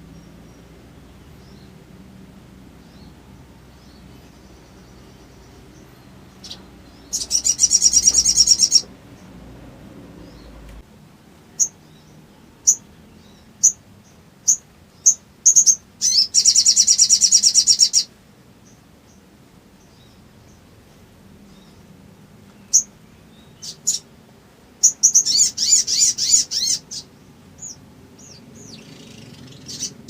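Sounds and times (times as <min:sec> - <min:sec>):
songbird trilling and chipping: 0:02.8 - 0:09.4, 0:11.6 - 0:19.2, 0:22.5 - 0:24.1, 0:24.8 - 0:30.0.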